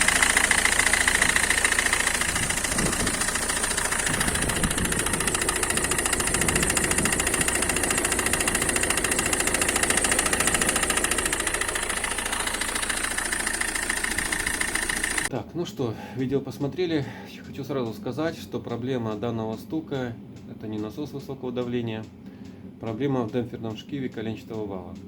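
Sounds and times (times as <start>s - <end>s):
diesel engine idling: 0.0s - 15.3s
knocking from front wheel: 0.0s - 15.3s.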